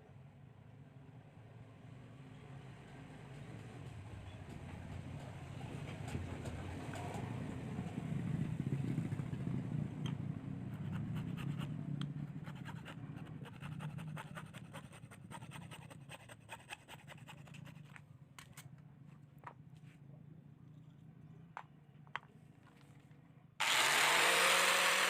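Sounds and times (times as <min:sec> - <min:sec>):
scratching and scraping small part: 0:10.7 - 0:18.7.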